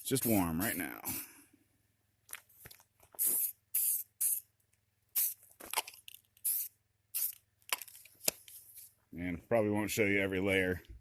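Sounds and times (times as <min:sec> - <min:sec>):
spray paint can hissing: 0:00.0 - 0:00.8, 0:03.2 - 0:04.5, 0:05.1 - 0:05.4, 0:06.4 - 0:07.4.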